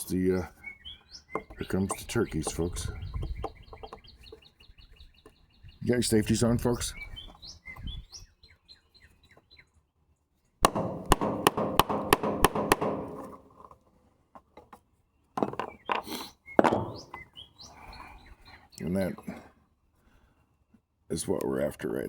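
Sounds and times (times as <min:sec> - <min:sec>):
birds chirping: 0:00.0 - 0:22.0
handling noise: 0:10.6 - 0:13.8.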